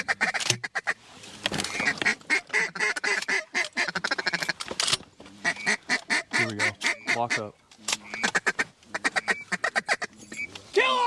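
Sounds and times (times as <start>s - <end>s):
duck quacking: 1.7s - 4.6s, 5.4s - 10.1s.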